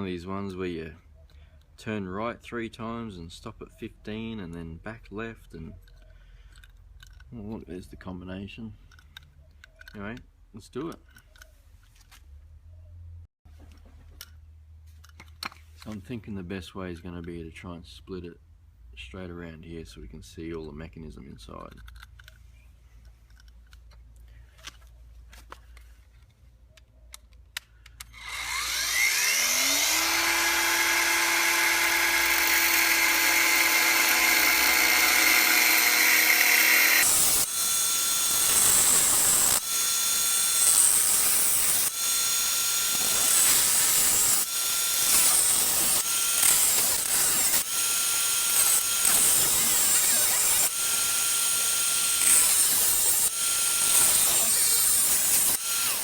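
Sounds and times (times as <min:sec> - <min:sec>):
electric cutting tool whine: 0:28.1 - 0:56.0
tool cutting into metal padlock: 0:28.1 - 0:56.0.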